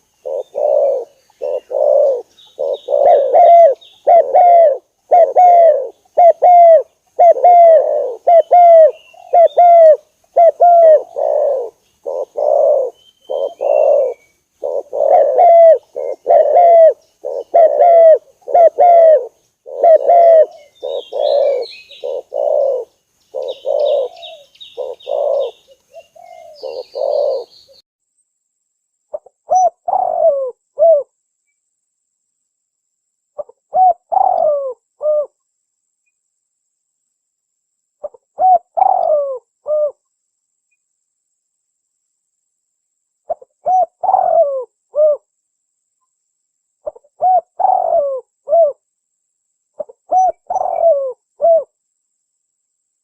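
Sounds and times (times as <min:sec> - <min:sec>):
dove cooing: 0:00.0 - 0:27.8, 0:29.1 - 0:31.1, 0:33.4 - 0:35.4, 0:38.0 - 0:40.0, 0:43.3 - 0:45.3, 0:46.8 - 0:48.8, 0:49.8 - 0:51.8
small birds chirping: 0:00.0 - 0:27.8, 0:49.7 - 0:51.5.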